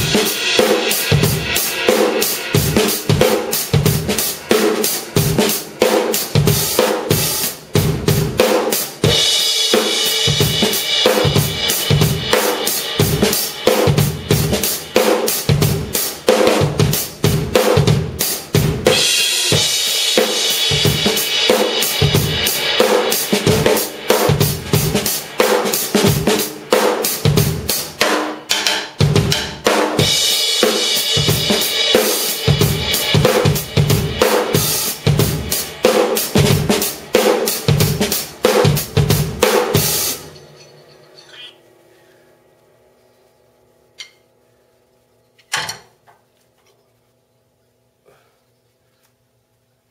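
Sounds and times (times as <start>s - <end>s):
crashing cymbals: 0.0s - 17.2s, 18.9s - 28.0s, 30.0s - 42.0s
drum kit groove: 0.0s - 41.6s.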